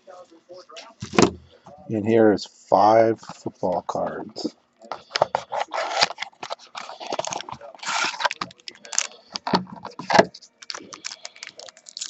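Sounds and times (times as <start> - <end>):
packaging crinkling and rustling: 4.9 - 12.0.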